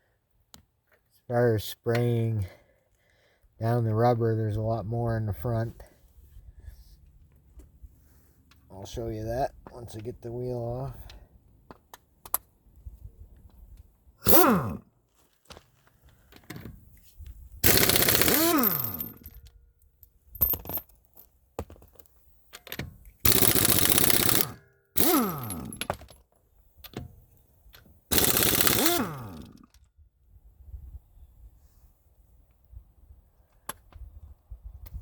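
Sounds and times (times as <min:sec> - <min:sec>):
impact wrench hammering: 0:14.3 - 0:14.5, 0:17.6 - 0:19.2, 0:23.3 - 0:26.1, 0:28.1 - 0:29.7
motor winding down whine: 0:17.7 - 0:19.2, 0:28.1 - 0:29.6
small knocks and clatter: 0:20.4 - 0:23.0.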